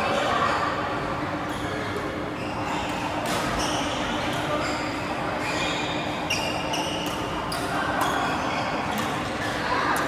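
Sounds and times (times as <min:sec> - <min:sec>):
shoes squeaking on court floor: 0:02.3 - 0:09.6.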